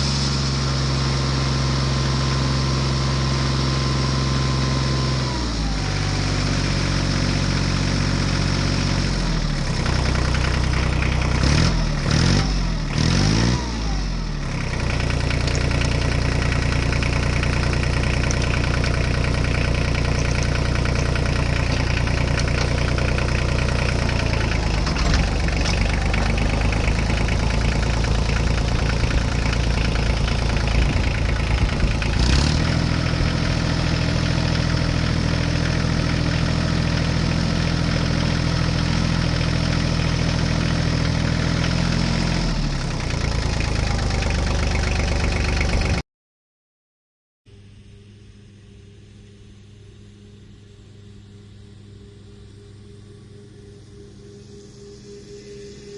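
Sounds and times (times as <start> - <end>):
tractor engine revving: 0.0 - 46.0.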